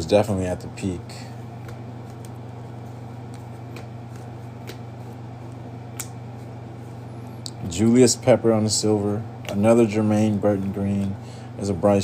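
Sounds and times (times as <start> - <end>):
low electrical hum: 0.0 - 12.0
trading cards shuffled: 1.5 - 6.9.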